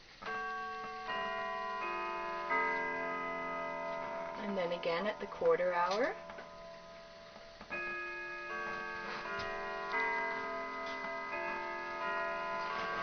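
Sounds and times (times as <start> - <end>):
grandfather clock chiming melody: 0.0 - 13.0
clock ticking: 0.3 - 13.0.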